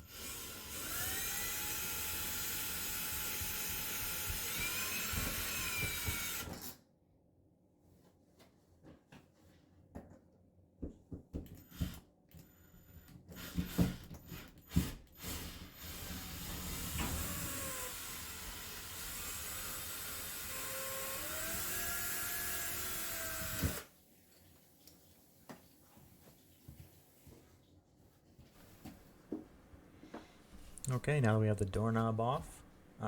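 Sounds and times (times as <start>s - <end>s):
cordless drill running: 0.0s - 6.8s, 13.3s - 23.9s.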